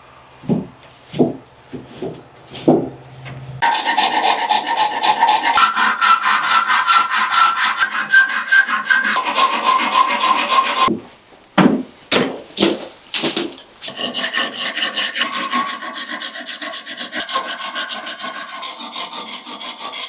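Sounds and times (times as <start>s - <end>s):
rasp filing bone: 3.6s - 10.9s, 13.4s - 20.0s.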